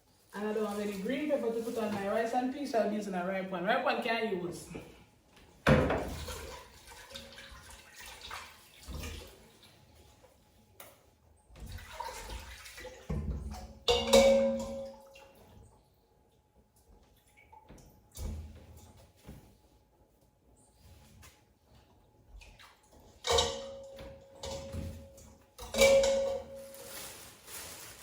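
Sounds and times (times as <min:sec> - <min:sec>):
water running at sink: 0:00.0 - 0:03.0, 0:05.6 - 0:10.9, 0:11.5 - 0:15.8.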